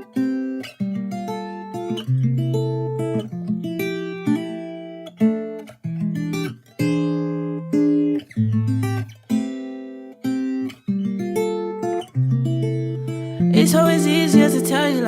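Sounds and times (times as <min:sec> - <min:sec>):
acoustic guitar plucking chords: 0:00.0 - 0:15.0.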